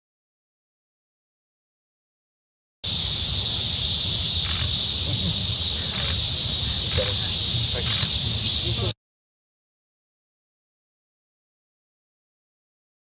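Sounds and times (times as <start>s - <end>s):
steady high hiss: 2.8s - 9.0s.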